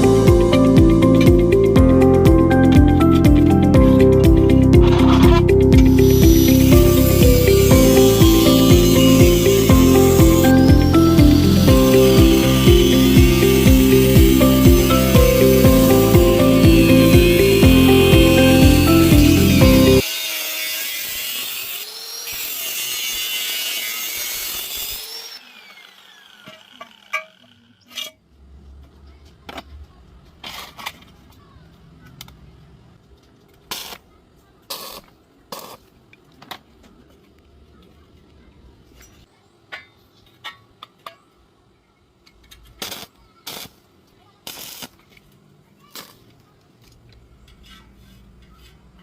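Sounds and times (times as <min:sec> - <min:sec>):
background music: 0:00.0 - 0:20.0
hissing tool noise: 0:04.5 - 0:27.9, 0:44.4 - 0:45.1.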